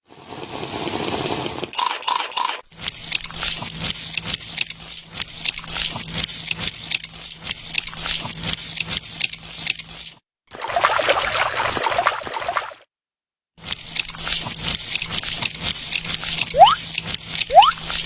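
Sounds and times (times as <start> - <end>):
hiss: 0.0 - 1.7
water sloshing and dripping: 10.5 - 12.8
short beeps: 16.6 - 16.8, 17.5 - 17.8.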